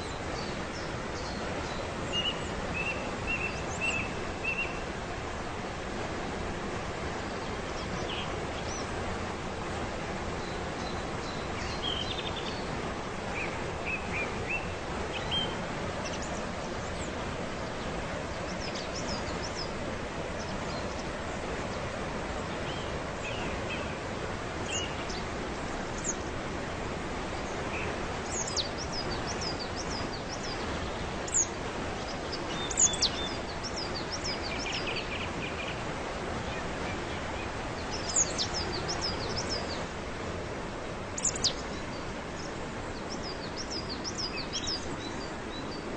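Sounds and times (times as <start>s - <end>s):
waterfall rushing: 0.0s - 45.9s
small birds chirping: 27.3s - 35.8s, 36.4s - 40.0s, 41.2s - 45.9s.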